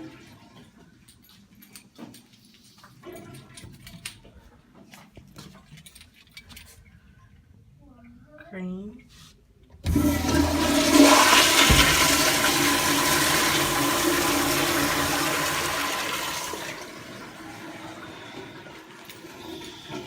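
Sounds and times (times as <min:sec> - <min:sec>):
toilet flushing: 0:09.8 - 0:20.0.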